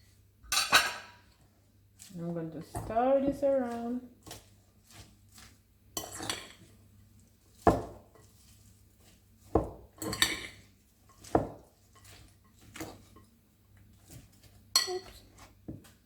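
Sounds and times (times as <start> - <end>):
utensils clattering in salad bowl: 2.0 - 6.7, 10.0 - 13.3.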